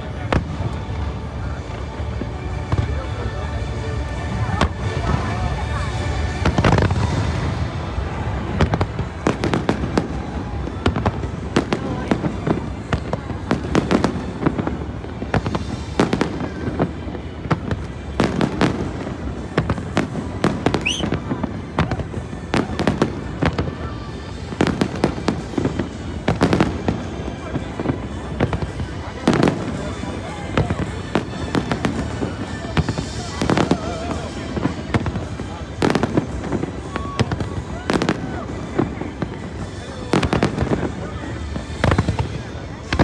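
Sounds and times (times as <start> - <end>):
firework bangs and crackle: 0.0 - 43.0
firework whistle: 20.2 - 21.4.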